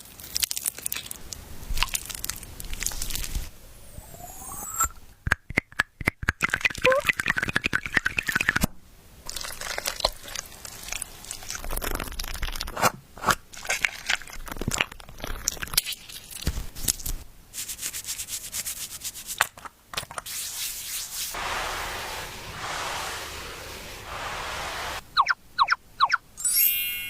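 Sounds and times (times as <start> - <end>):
crunchy food being chewed: 0.0 - 3.5, 9.3 - 17.2.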